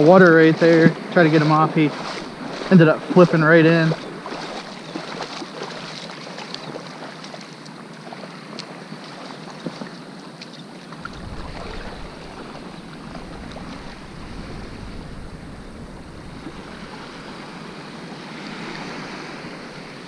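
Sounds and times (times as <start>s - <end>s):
waves washing at shore: 0.0s - 20.0s
wind on microphone: 10.9s - 20.0s.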